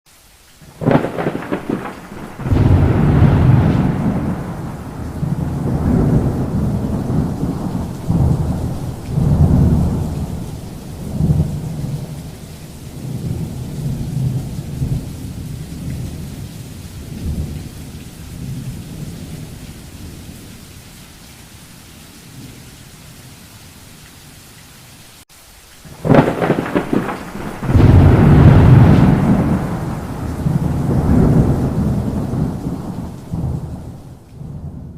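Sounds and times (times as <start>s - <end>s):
rain hissing: 0.1s - 34.9s
thunder rumbling: 0.7s - 20.2s, 25.9s - 34.9s
sharp thunderclaps: 0.8s - 12.3s, 26.0s - 34.9s.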